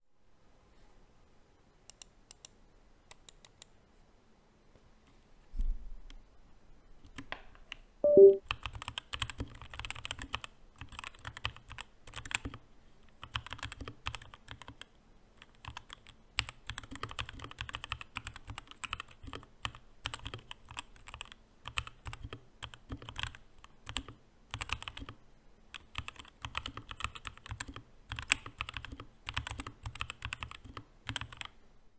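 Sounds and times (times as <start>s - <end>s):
mechanical keyboard typing: 8.0s - 12.6s, 13.2s - 31.6s.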